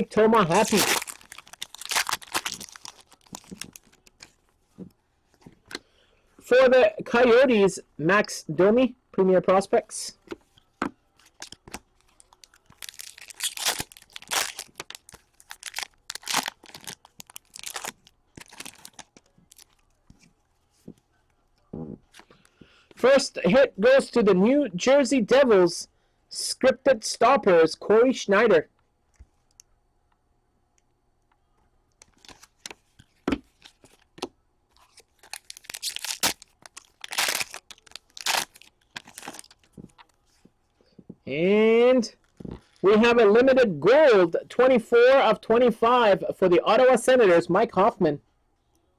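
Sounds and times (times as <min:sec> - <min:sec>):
card pack wrappers tearing: 0:00.4 - 0:04.3, 0:11.2 - 0:19.8, 0:34.8 - 0:40.0.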